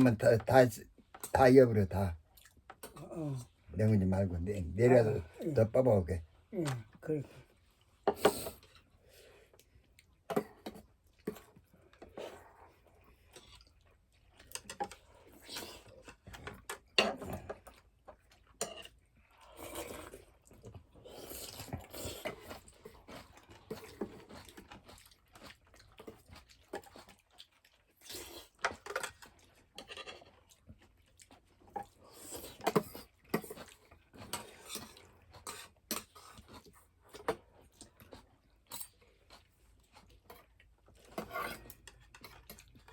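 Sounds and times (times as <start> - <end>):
person chewing and crunching: 9.5 - 42.9.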